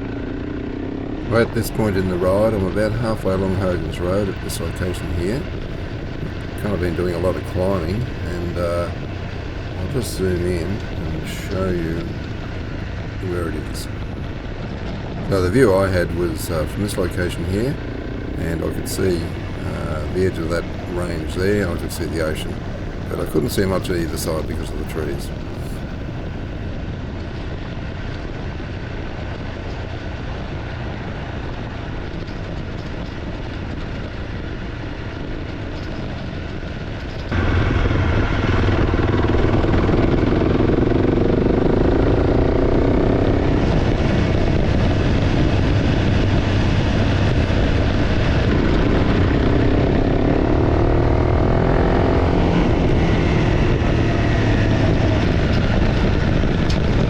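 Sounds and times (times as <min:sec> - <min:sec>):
motorcycle engine revving: 0:00.0 - 0:14.5, 0:15.3 - 0:26.6, 0:37.3 - 0:57.0.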